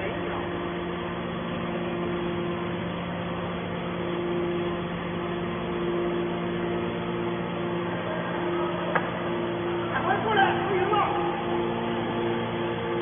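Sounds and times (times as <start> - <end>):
hydraulic power unit humming: 0.0 - 13.0
higher tone: 4.2 - 13.0.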